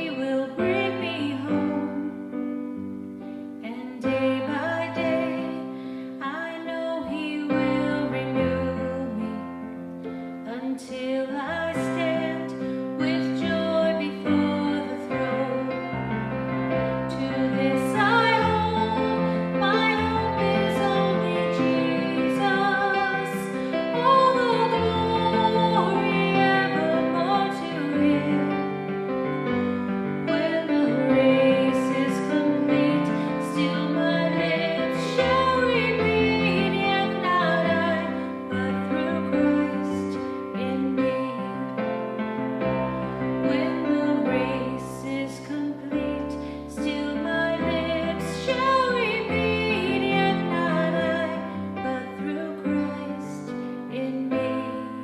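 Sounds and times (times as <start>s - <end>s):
woman singing: 0.0s - 55.0s.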